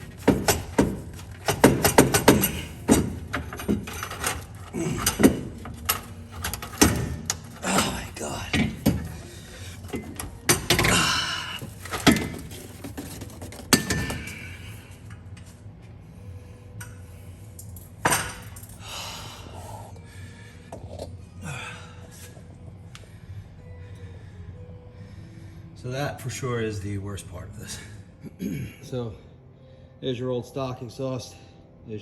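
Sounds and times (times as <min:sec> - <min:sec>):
metal exhaust pipe clanking: 0:00.0 - 0:14.6.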